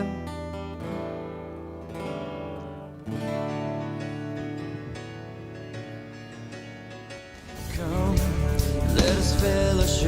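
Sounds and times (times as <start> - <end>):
keyboard playing chords: 3.9 - 10.0.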